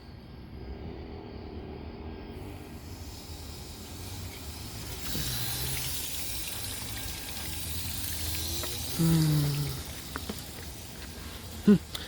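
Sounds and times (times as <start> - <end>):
churning water: 4.2 - 12.0.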